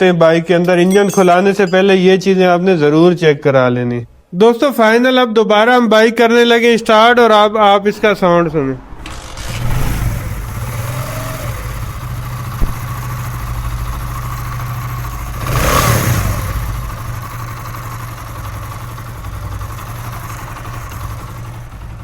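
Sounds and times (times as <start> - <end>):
motorcycle engine idling and revving: 8.9 - 22.0.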